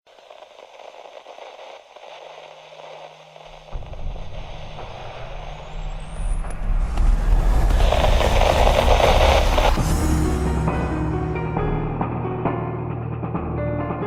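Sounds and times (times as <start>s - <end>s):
crackling static noise: 0.0s - 10.3s
high rising whine: 1.7s - 12.2s
deep rumble: 3.7s - 12.6s.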